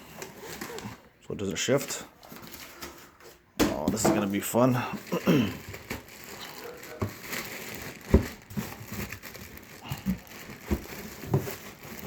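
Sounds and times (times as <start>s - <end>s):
handling knocks: 3.6s - 4.4s
plastic packaging crinkling: 3.8s - 12.0s.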